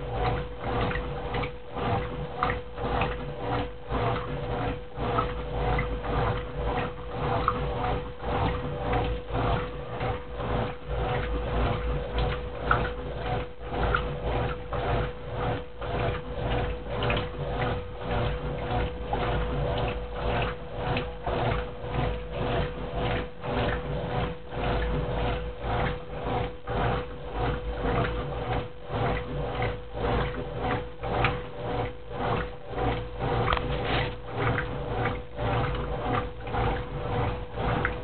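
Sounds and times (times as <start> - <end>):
motor hum: 0.0 - 38.0
washing machine swishing: 0.0 - 38.0.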